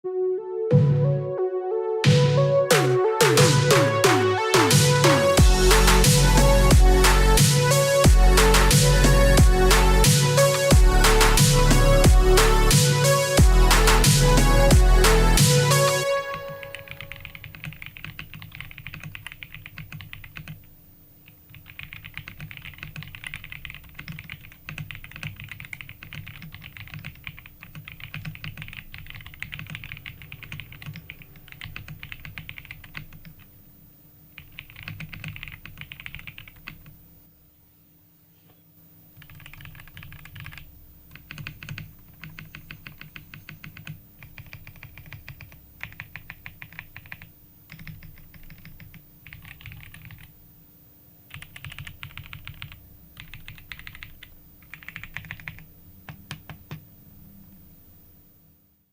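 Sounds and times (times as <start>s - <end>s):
typing on mechanical keyboard: 16.3s - 33.5s, 34.4s - 37.0s, 39.2s - 50.3s, 51.3s - 56.8s.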